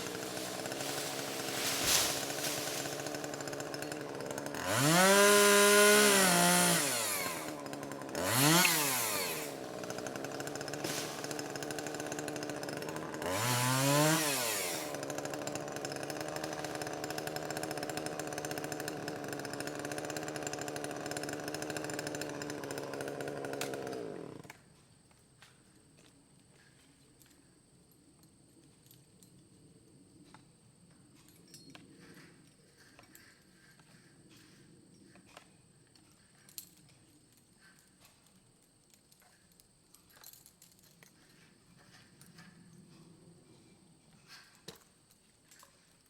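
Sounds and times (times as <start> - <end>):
chainsaw engine idling and revving: 0.0 - 24.6.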